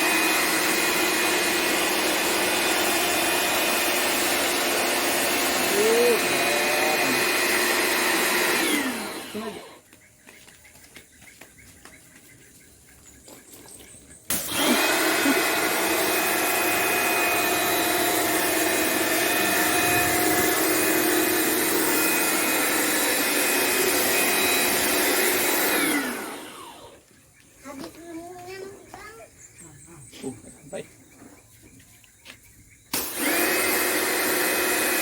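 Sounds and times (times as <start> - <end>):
electric pressure washer whining: 0.0 - 9.9, 14.3 - 27.1, 32.9 - 35.0.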